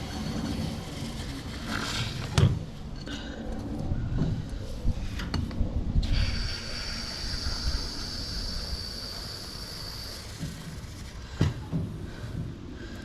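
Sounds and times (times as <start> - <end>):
aerosol foam hissing: 6.2 - 10.9.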